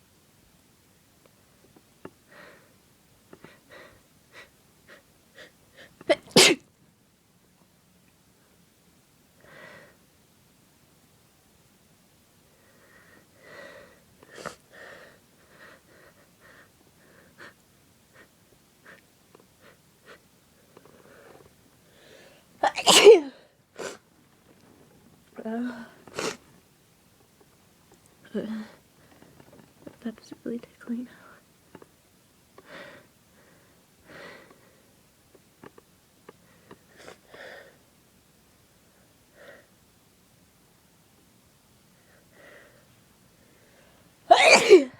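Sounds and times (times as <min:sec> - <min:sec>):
person sniffing: 0:26.1 - 0:26.4.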